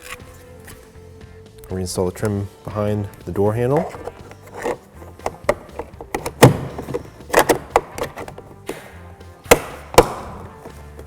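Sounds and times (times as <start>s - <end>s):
plastic trim snapping onto clips: 3.8s - 8.9s.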